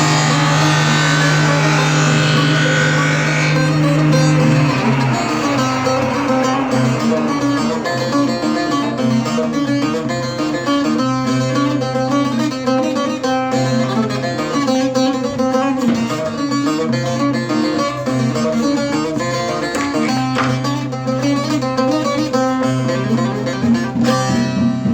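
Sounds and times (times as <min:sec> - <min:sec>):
low drone string: 0:00.0 - 0:12.1
plucked long-neck lute melody: 0:00.0 - 0:22.6.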